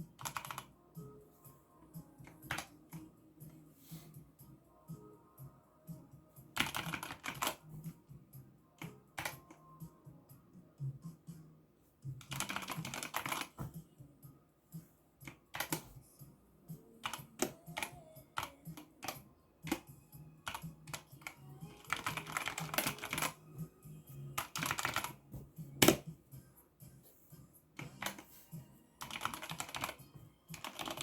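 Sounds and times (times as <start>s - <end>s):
mechanical keyboard typing: 0.2s - 0.7s, 2.3s - 2.7s, 6.6s - 7.6s, 8.8s - 9.5s, 12.2s - 13.5s, 15.2s - 15.8s, 17.0s - 19.8s, 20.4s - 23.4s, 24.4s - 25.2s, 29.0s - 31.0s.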